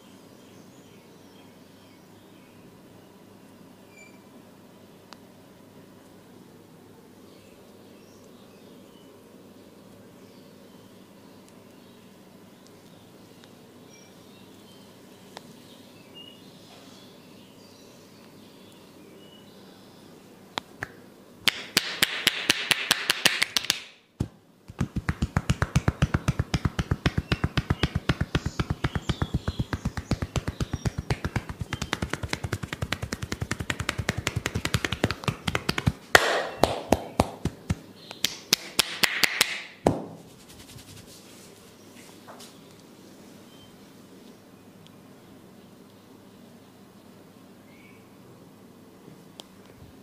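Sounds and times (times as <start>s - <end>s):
hands slapping body in massage: 20.8s - 41.2s.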